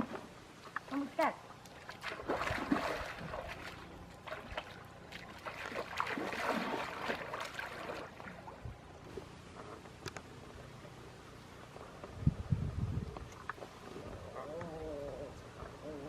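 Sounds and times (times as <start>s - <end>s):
shallow water splashing: 0.0s - 9.3s.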